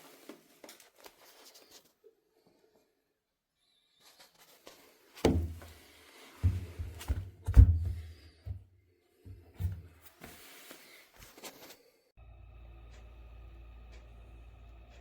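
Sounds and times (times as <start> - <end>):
knocks and heavy thuds: 6.4 - 8.6.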